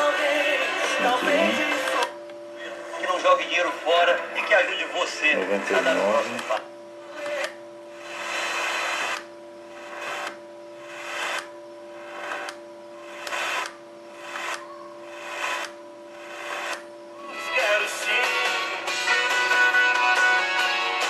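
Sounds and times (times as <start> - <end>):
faint electronic whine: 0.0 - 21.0
radio static bursts: 0.9 - 2.1, 4.2 - 11.4.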